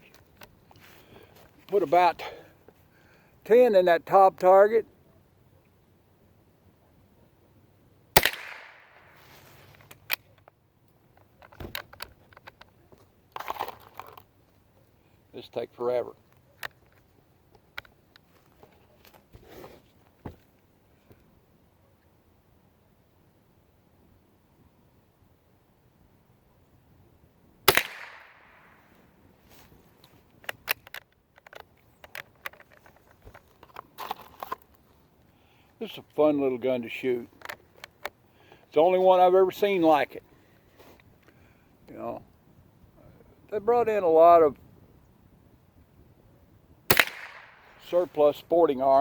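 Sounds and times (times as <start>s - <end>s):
rifle bolt metallic clicks: 8.2s - 9.0s, 27.7s - 28.6s, 46.9s - 47.8s
rifle shot echo: 8.2s - 9.2s, 27.7s - 29.0s, 46.9s - 47.9s.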